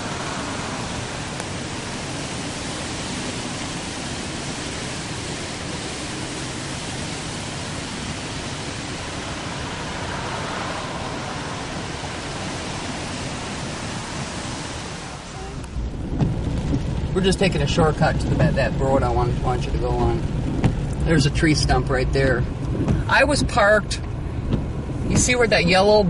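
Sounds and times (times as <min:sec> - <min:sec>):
heavy rain: 0:00.0 - 0:26.0
wind: 0:00.0 - 0:26.0.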